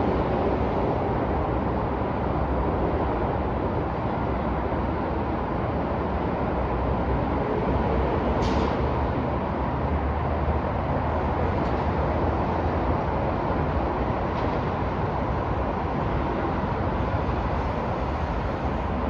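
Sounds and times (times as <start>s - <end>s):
rumble of passing vehicles: 0.0s - 19.0s.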